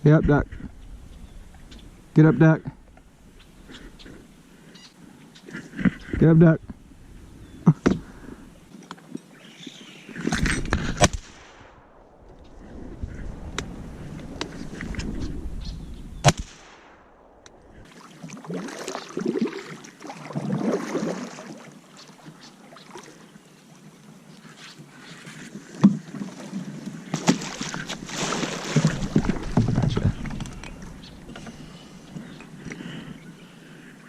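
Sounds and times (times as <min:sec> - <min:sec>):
kayak rustling against cattails: 0:12.2 - 0:16.3, 0:17.7 - 0:34.0
paddle splashes: 0:17.8 - 0:23.8, 0:25.4 - 0:32.7.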